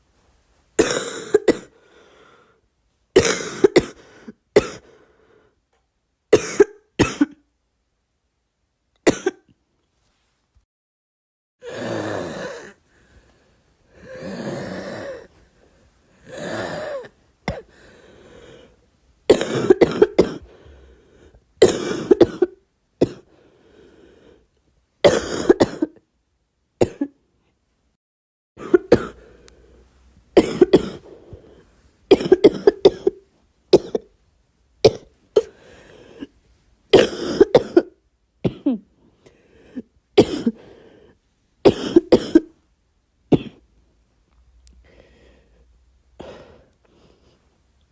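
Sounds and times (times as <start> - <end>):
girl coughing: 0.8 - 1.7, 3.2 - 4.9, 6.4 - 7.4, 9.1 - 9.5, 19.3 - 20.5, 21.6 - 23.3, 25.1 - 26.0, 28.6 - 29.2, 30.4 - 31.1, 32.1 - 33.2, 37.0 - 38.9, 40.2 - 40.6, 41.7 - 42.5, 43.3 - 43.6.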